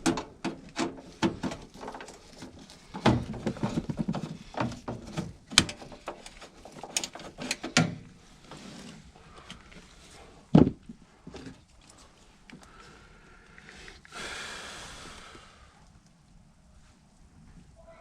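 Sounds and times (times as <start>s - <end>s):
tools and parts clicking and rattling: 0.0s - 8.1s.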